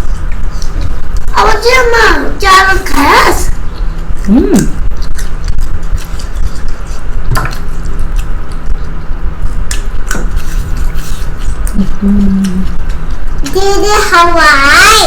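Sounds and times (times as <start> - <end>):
wet chewing of food: 3.7 - 13.8
person humming: 4.3 - 4.8, 11.8 - 12.8.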